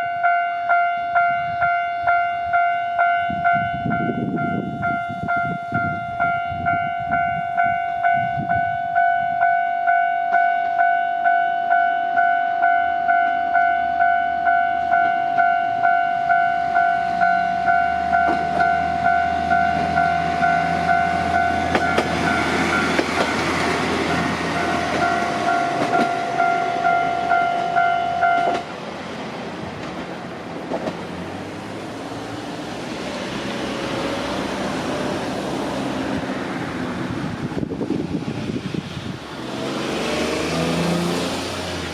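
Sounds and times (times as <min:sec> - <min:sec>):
level crossing warning bell: 0:00.0 - 0:28.8
diesel railcar running over rails: 0:00.0 - 0:41.9.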